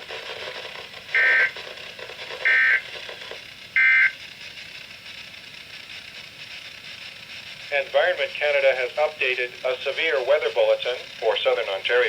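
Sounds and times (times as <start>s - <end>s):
buzzy digital data warbles: 1.1s - 1.6s, 2.4s - 2.9s.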